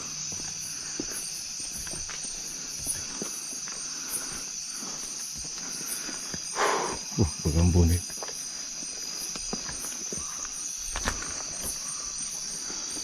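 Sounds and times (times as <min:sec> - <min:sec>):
faint footsteps: 0:00.0 - 0:06.5, 0:08.0 - 0:13.0
crickets chirping: 0:00.0 - 0:13.0.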